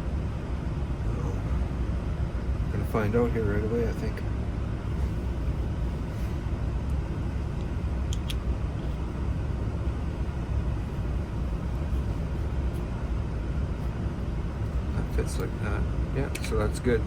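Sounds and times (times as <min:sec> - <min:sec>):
low background rumble: 0:00.0 - 0:17.0
faint small clicks: 0:07.6 - 0:08.4.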